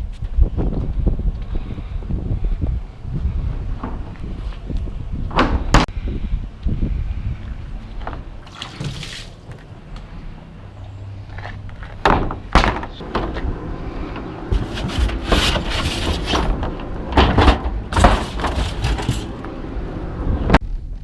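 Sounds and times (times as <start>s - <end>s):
wind rumble on microphone: 0.0s - 8.5s, 11.7s - 21.0s
sharp knocks and thuds: 12.0s - 13.5s, 14.5s - 19.4s.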